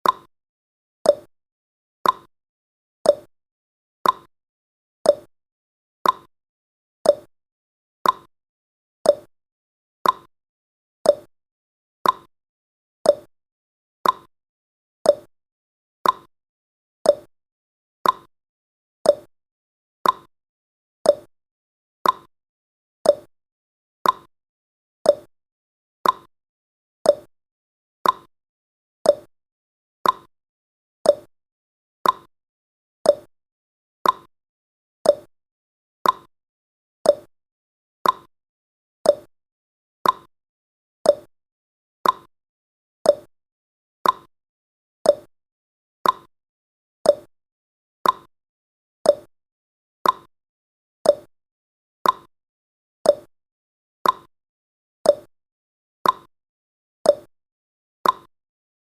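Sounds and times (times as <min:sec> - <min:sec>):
clock tick-tock: 0:00.0 - 0:00.3, 0:01.1 - 0:01.3, 0:02.0 - 0:02.3, 0:03.1 - 0:03.3, 0:04.0 - 0:04.3, 0:05.1 - 0:05.3, 0:06.0 - 0:06.3, 0:07.1 - 0:07.3, 0:08.0 - 0:08.3, 0:09.1 - 0:09.3, 0:10.0 - 0:10.3, 0:11.1 - 0:11.3, 0:12.0 - 0:12.3, 0:13.1 - 0:13.3, 0:14.0 - 0:14.3, 0:15.1 - 0:15.3, 0:16.0 - 0:16.3, 0:17.1 - 0:17.3, 0:18.0 - 0:18.3, 0:19.1 - 0:19.3, 0:20.0 - 0:20.3, 0:21.0 - 0:21.3, 0:22.0 - 0:22.3, 0:23.0 - 0:23.3, 0:24.0 - 0:24.3, 0:25.0 - 0:25.3, 0:26.0 - 0:26.3, 0:27.0 - 0:27.3, 0:28.0 - 0:28.3, 0:29.0 - 0:29.3, 0:30.0 - 0:30.3, 0:31.0 - 0:31.3, 0:32.0 - 0:32.3, 0:33.0 - 0:33.3, 0:34.0 - 0:34.3, 0:35.0 - 0:35.3, 0:36.0 - 0:36.3, 0:37.0 - 0:37.3, 0:38.0 - 0:38.3, 0:39.0 - 0:39.3, 0:40.0 - 0:40.3, 0:41.0 - 0:41.3, 0:42.0 - 0:42.3, 0:43.0 - 0:43.3, 0:44.0 - 0:44.3, 0:45.0 - 0:45.3, 0:46.0 - 0:46.3, 0:47.0 - 0:47.3, 0:48.0 - 0:48.3, 0:49.1 - 0:49.3, 0:50.0 - 0:50.3, 0:51.0 - 0:51.3, 0:52.0 - 0:52.3, 0:53.1 - 0:53.3, 0:54.0 - 0:54.3, 0:55.1 - 0:55.3, 0:56.0 - 0:56.3, 0:57.1 - 0:57.3, 0:58.0 - 0:58.3.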